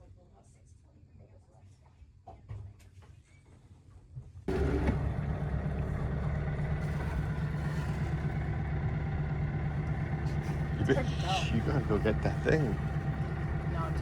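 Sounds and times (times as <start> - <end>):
boat engine running: 4.5 - 14.0.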